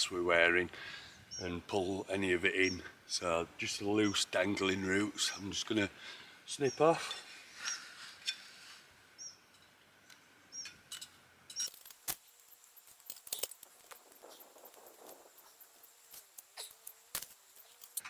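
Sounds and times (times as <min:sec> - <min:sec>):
roots rustling: 0:11.6 - 0:18.0
secateurs snipping: 0:11.6 - 0:18.0.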